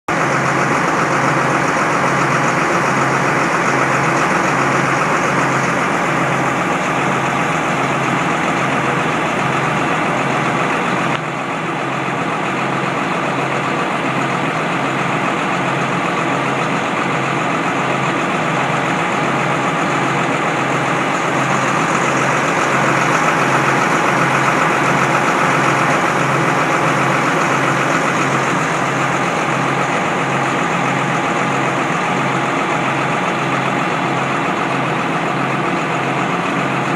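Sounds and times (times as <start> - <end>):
harvest machinery droning: 0.1 - 36.9.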